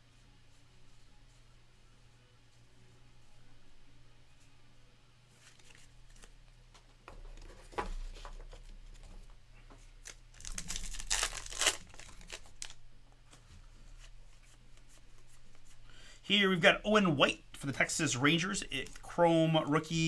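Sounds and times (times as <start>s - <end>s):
plastic wrapper crinkling and tearing: 10.0s - 12.8s, 18.8s - 19.2s.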